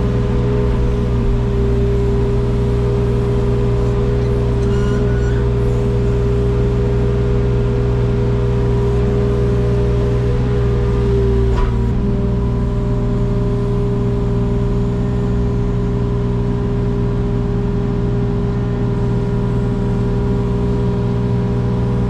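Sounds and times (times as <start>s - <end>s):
excavator diesel engine running: 0.0s - 15.6s.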